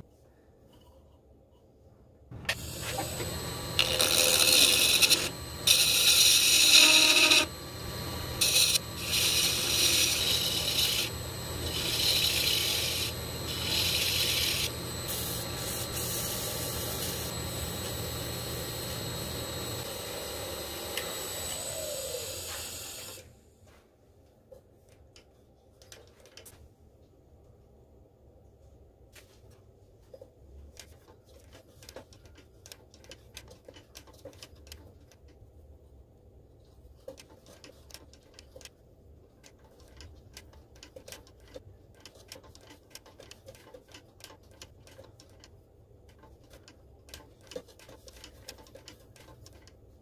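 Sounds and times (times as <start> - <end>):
wood lathe humming: 2.4 - 23.2
motor winding down whine: 2.4 - 23.3
tool rasping on spinning wood: 2.7 - 19.8.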